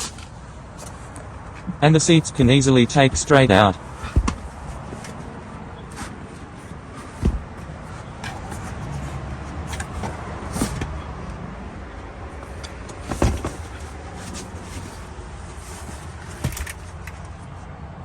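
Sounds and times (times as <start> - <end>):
low steady rumble: 0.0 - 18.0
seat knocking against car body: 2.4 - 5.2, 5.9 - 11.0, 12.5 - 17.2.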